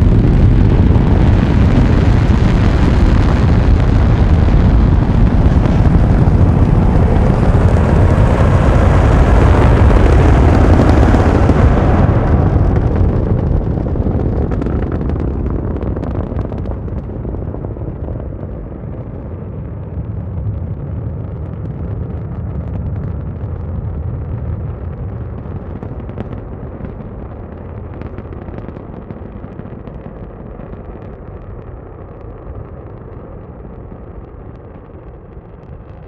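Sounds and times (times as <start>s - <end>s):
rocket engines rumbling and crackling: 0.0s - 36.0s.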